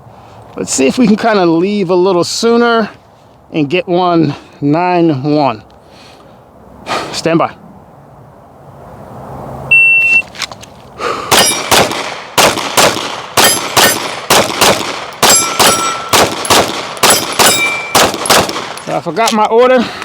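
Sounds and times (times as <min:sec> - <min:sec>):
shot timer beep: 0:09.7 - 0:10.2
pistol shots: 0:11.3 - 0:19.0
steel target ringing: 0:11.4 - 0:11.7, 0:15.2 - 0:18.8.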